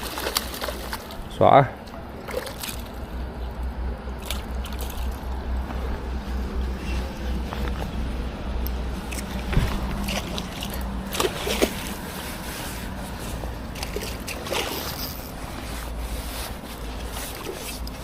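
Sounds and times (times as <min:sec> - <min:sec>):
water splashing and sloshing: 0:00.0 - 0:18.0.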